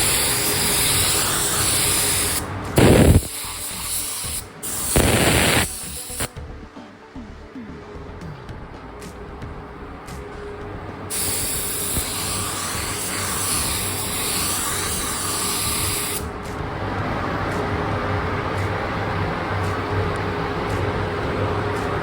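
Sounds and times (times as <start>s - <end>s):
spray paint hiss: 0.0s - 6.3s, 11.1s - 16.3s.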